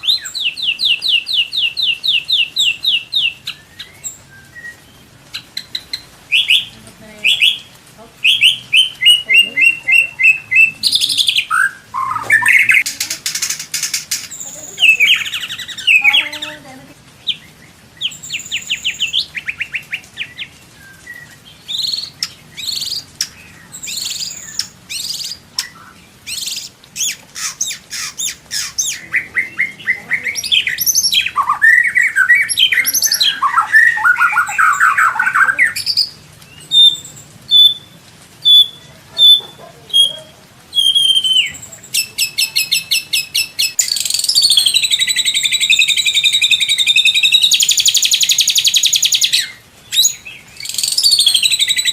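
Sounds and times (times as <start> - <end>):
songbird singing: 0.0 - 51.9
harsh rattling bird phrase: 5.4 - 17.4, 21.8 - 36.1, 38.5 - 49.5.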